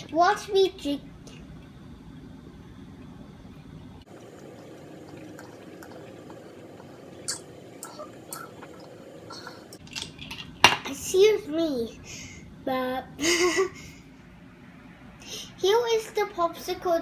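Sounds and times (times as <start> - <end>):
child drinking liquid: 4.1 - 9.8.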